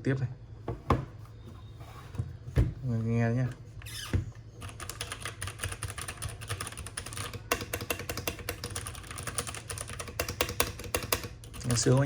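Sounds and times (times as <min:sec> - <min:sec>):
mechanical keyboard typing: 0:04.6 - 0:12.0.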